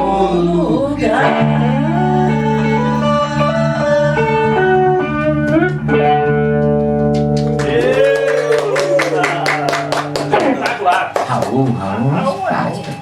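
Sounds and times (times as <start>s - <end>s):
guitar melody over chords: 1.0s - 7.8s
hand claps: 6.6s - 11.8s.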